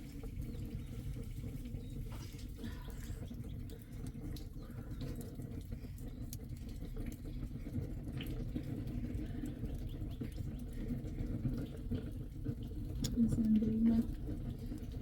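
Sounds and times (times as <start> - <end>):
light drips and ticks: 0.0 - 15.0
rain falling: 0.0 - 15.0.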